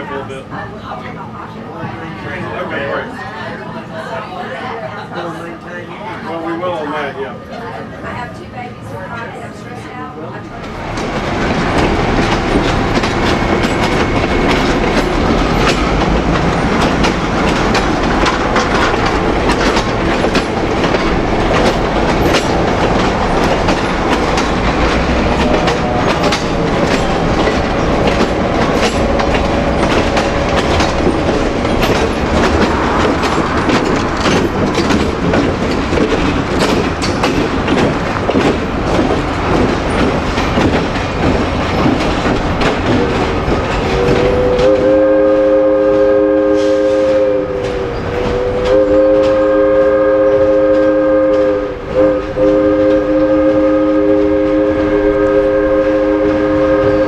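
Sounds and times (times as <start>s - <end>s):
rumble of train wheels on rail: 0.0s - 57.0s
clicks over rail joints: 10.6s - 44.9s.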